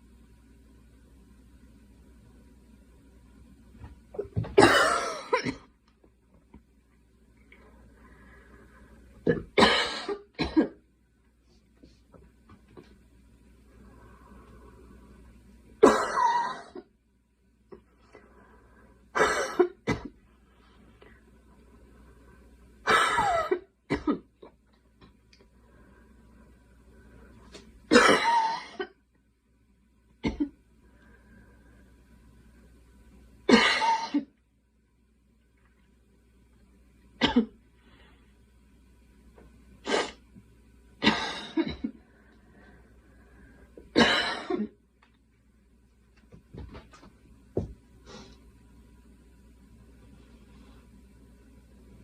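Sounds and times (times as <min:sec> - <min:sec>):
girl coughing: 0:04.6 - 0:05.7, 0:09.3 - 0:10.8, 0:15.8 - 0:16.8, 0:19.2 - 0:20.1, 0:22.9 - 0:24.3, 0:27.9 - 0:29.0, 0:33.5 - 0:34.3, 0:37.2 - 0:37.6, 0:41.0 - 0:42.0, 0:44.0 - 0:44.8.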